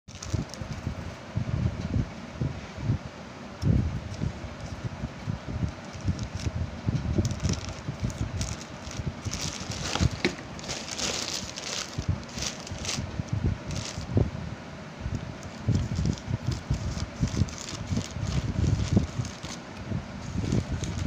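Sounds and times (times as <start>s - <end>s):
packaging crinkling: 0.1s - 0.8s, 5.7s - 6.5s, 7.1s - 14.1s, 15.4s - 19.6s, 20.2s - 21.0s
dull handling thumps: 9.3s - 12.8s.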